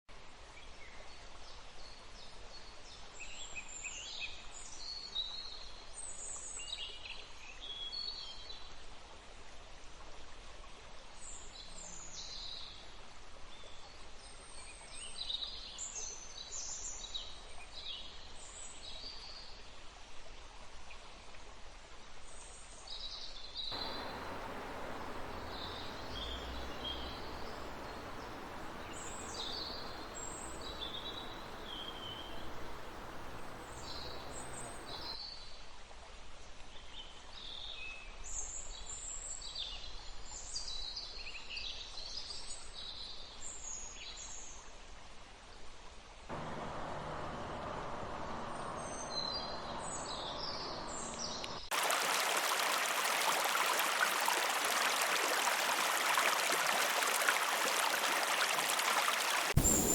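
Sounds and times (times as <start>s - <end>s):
birds chirping: 23.8s - 35.2s, 46.3s - 51.7s, 59.2s - 59.9s
river water rushing: 23.8s - 35.2s, 46.3s - 59.9s.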